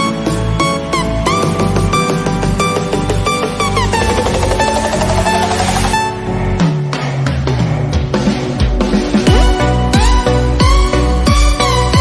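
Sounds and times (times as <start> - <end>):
electronic music with plucked notes: 0.0 - 6.9.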